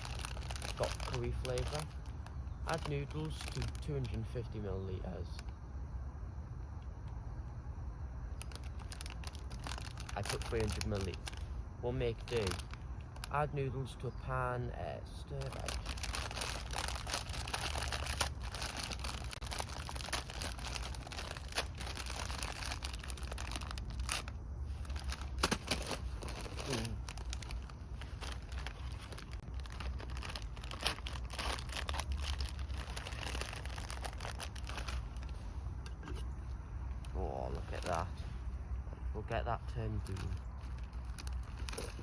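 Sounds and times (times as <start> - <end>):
plastic packet crinkling: 0.0 - 4.2, 8.4 - 11.4, 12.1 - 13.3, 15.4 - 35.3, 40.0 - 42.0.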